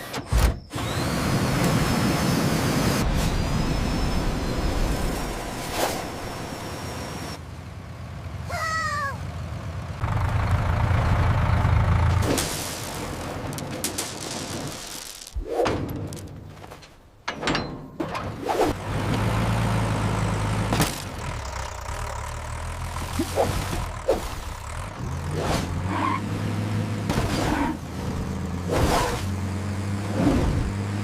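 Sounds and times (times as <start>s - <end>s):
tractor engine humming: 0.8s - 14.1s, 18.8s - 27.1s
sharp knocks and clanks: 15.6s - 18.4s.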